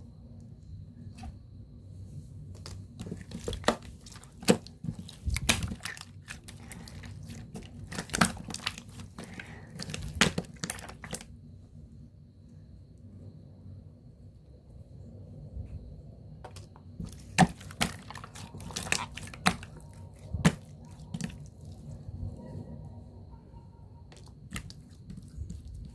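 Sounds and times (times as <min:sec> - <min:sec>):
slime squishing with crackling clicks: 0:02.6 - 0:11.2, 0:17.1 - 0:21.7.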